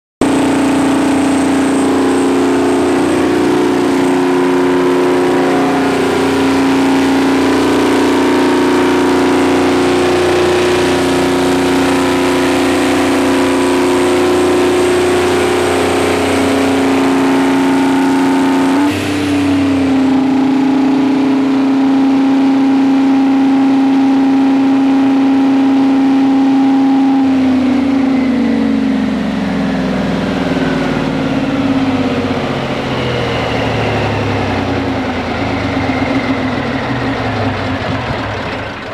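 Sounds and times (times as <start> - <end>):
diesel generator engine running: 0.2 - 38.9.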